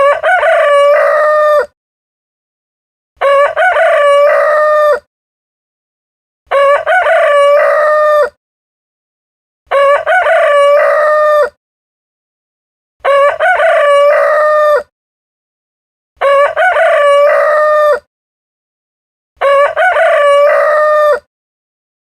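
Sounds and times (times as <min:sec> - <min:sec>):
rooster crowing: 0:00.0 - 0:01.7, 0:03.2 - 0:05.1, 0:06.5 - 0:08.4, 0:09.7 - 0:11.6, 0:13.0 - 0:14.9, 0:16.2 - 0:18.1, 0:19.4 - 0:21.3.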